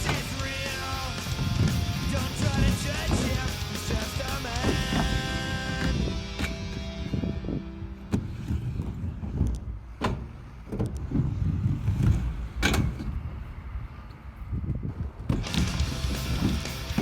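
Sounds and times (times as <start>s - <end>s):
skateboard clacks: 0.0s - 6.9s
skateboard wheels rolling on concrete: 0.0s - 17.0s.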